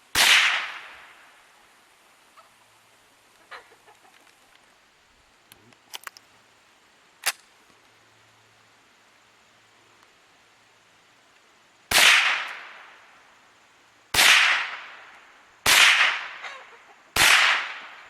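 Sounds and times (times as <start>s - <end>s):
rifle mechanism clicks: 5.8s - 6.2s.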